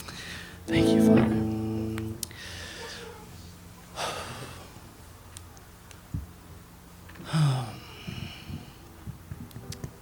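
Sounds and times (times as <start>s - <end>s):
faint low thumps: 0.7s - 2.2s.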